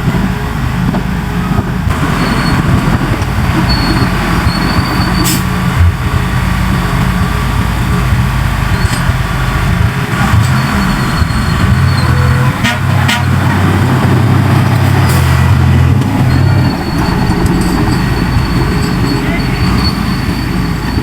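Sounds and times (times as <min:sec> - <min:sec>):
bulldozer diesel engine running: 0:00.0 - 0:21.0
faint high squeal: 0:10.4 - 0:12.6, 0:16.2 - 0:21.0.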